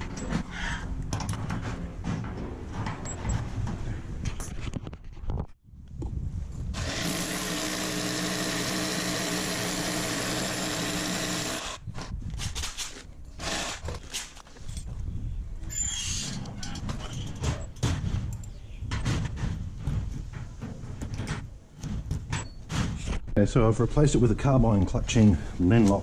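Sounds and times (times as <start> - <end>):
power drill running: 6.8 - 11.8.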